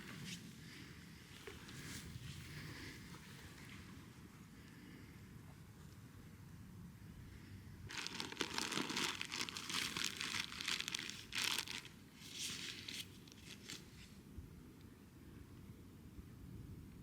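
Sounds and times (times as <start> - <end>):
crinkling and rustling: 7.9 - 14.1.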